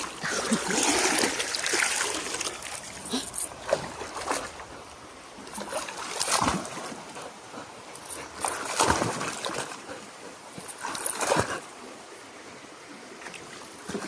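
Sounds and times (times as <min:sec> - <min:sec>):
water splashing and sloshing: 0:00.0 - 0:14.0.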